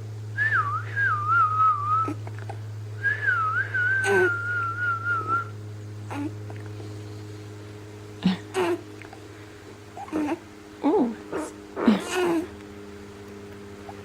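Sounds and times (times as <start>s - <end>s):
person whistling: 0.4s - 2.2s, 3.0s - 5.5s.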